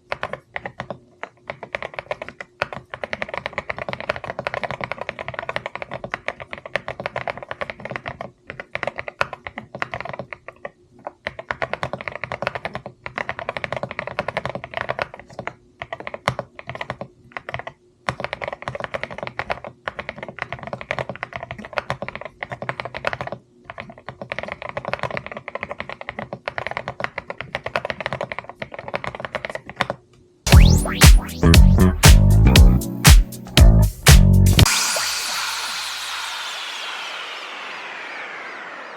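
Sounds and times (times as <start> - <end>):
loud music: 30.5 - 38.9.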